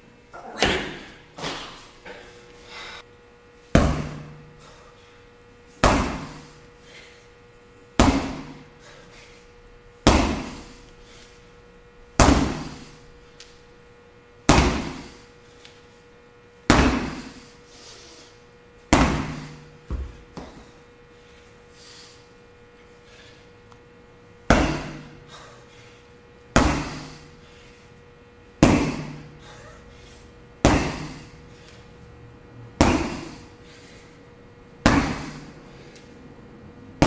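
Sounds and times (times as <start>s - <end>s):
faint steady hum: 0.0s - 37.0s
heavy slams of workout equipment: 16.7s - 17.3s, 28.6s - 29.2s, 32.8s - 33.4s, 34.8s - 35.4s.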